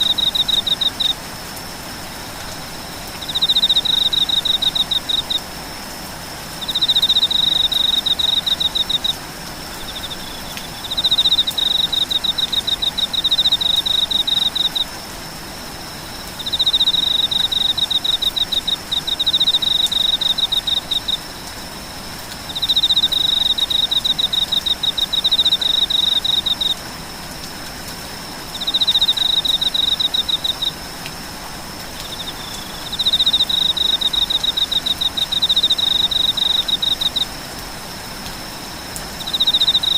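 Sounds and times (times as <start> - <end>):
insect pulsed trill: 0.0 - 1.2, 2.7 - 5.4, 6.6 - 15.0, 15.8 - 26.8, 28.5 - 30.8, 32.0 - 37.3, 38.8 - 39.9.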